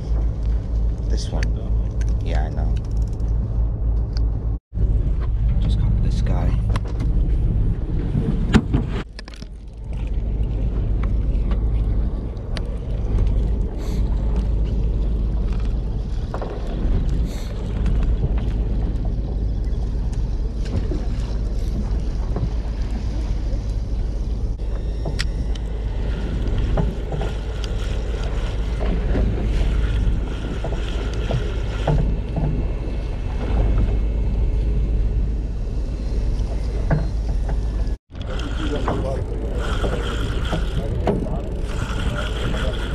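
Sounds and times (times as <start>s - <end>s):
boat engine rumbling: 0.0s - 42.9s.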